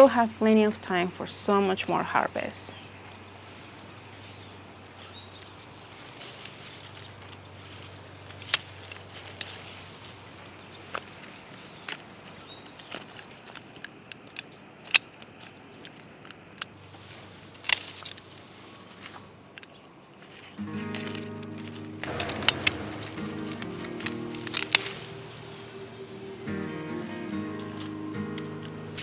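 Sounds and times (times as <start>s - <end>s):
sharp single clicks: 20.7s - 26.6s
high-pitched insect drone: 22.0s - 29.0s.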